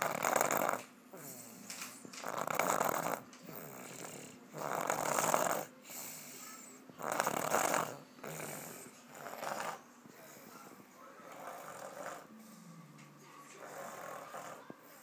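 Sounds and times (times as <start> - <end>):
loud rough snoring: 0.0 - 1.5, 2.2 - 6.2, 7.0 - 9.8, 11.2 - 12.4, 13.6 - 14.7
quiet breathing: 1.1 - 2.2, 2.9 - 15.0.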